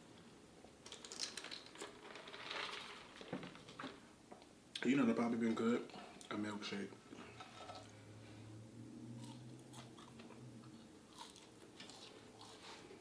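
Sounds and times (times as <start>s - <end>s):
close-up chewing: 9.2s - 13.0s.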